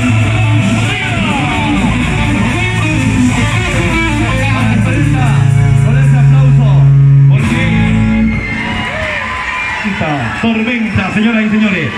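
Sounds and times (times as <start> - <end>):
guitar playing: 0.0 - 9.0
sustained bass notes: 0.0 - 9.2.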